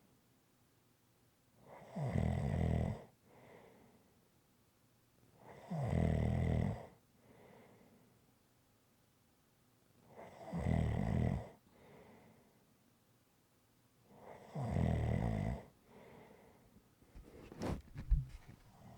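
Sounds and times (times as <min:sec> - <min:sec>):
soft breath: 0:07.2 - 0:08.1, 0:11.7 - 0:12.6, 0:15.8 - 0:18.9.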